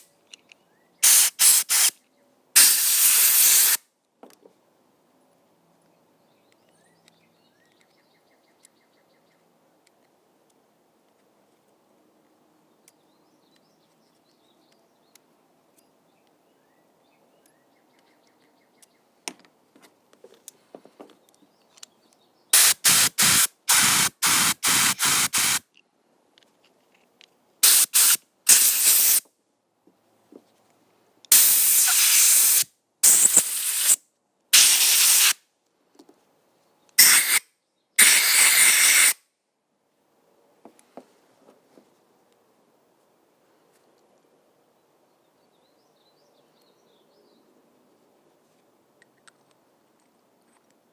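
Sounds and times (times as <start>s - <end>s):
faint clicks of parts handled: 0.2s - 0.7s, 9.8s - 11.8s, 17.4s - 22.3s, 25.7s - 27.4s, 35.6s - 37.0s, 48.5s - 50.8s
air blow gun hissing blasts: 1.0s - 2.0s, 2.6s - 3.8s, 22.5s - 25.6s, 27.6s - 29.2s, 31.3s - 35.4s, 37.0s - 37.4s, 38.0s - 39.2s.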